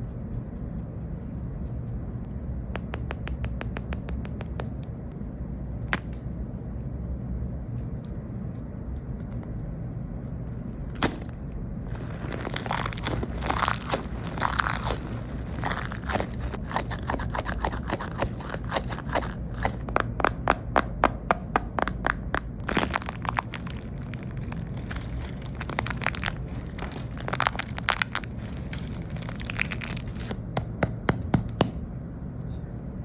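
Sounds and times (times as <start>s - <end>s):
squishy toy crackling: 11.9s - 30.5s.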